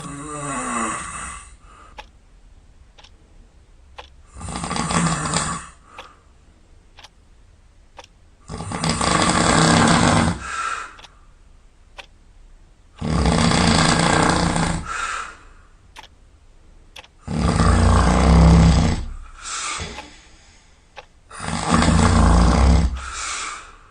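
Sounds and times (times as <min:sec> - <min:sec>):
loud snoring: 0:00.0 - 0:01.4, 0:04.3 - 0:05.8, 0:08.5 - 0:10.5, 0:13.0 - 0:15.0, 0:17.2 - 0:19.2, 0:21.3 - 0:23.3.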